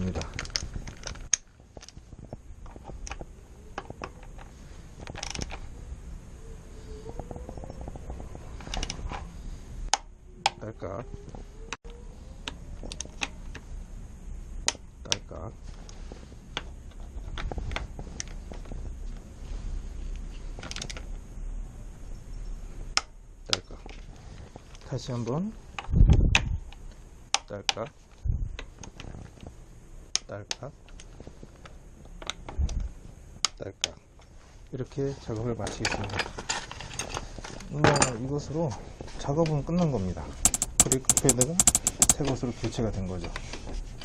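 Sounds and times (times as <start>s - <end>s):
low steady rumble: 0.0s - 27.3s
hand tools clicking on metal: 40.5s - 42.2s.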